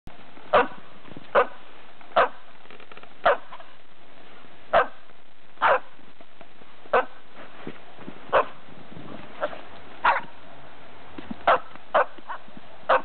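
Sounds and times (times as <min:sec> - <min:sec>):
background hiss: 0:00.1 - 0:13.0
dog barking: 0:00.5 - 0:01.6, 0:02.2 - 0:02.4, 0:03.2 - 0:03.6, 0:04.7 - 0:05.0, 0:05.6 - 0:05.9, 0:06.9 - 0:07.2, 0:08.3 - 0:08.6, 0:09.4 - 0:10.3, 0:11.4 - 0:13.0.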